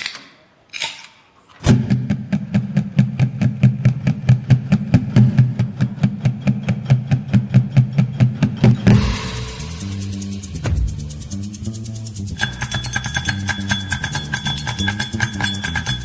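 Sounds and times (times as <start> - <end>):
steady low hum: 8.7 - 13.1
beer bottles tapped: 12.4 - 16.0.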